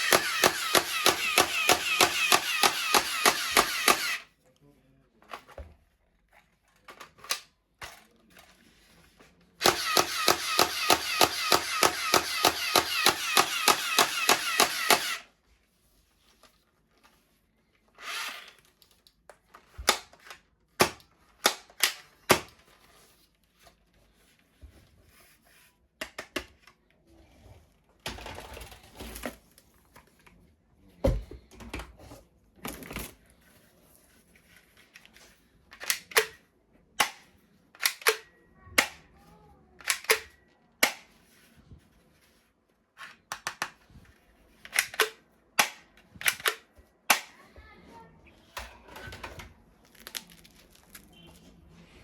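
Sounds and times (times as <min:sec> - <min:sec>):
toy gun electronic firing: 0:00.0 - 0:04.3, 0:09.6 - 0:15.3.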